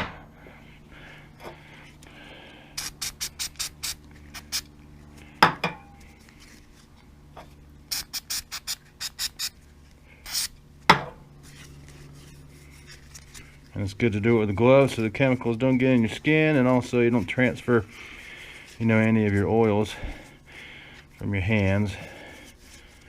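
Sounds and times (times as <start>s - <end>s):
scratchy rubbing strokes on metal: 2.8s - 4.7s, 7.9s - 9.6s, 10.2s - 10.6s.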